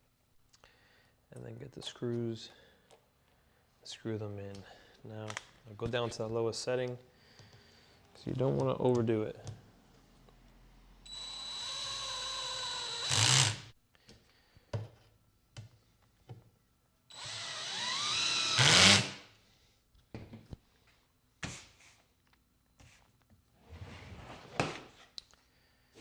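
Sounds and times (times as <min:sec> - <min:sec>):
power drill driving screws: 0:11.1 - 0:13.7, 0:17.1 - 0:19.2.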